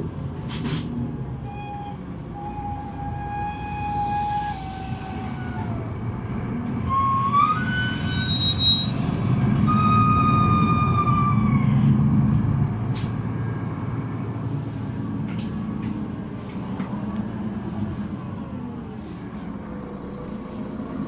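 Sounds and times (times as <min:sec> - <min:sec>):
diesel engine running: 0:00.0 - 0:21.0
bus joint squealing: 0:06.8 - 0:12.0.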